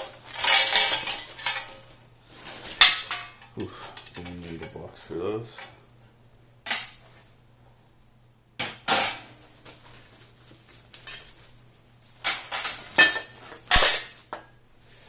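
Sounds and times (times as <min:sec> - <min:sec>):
small metal parts clinking: 0:00.0 - 0:01.8.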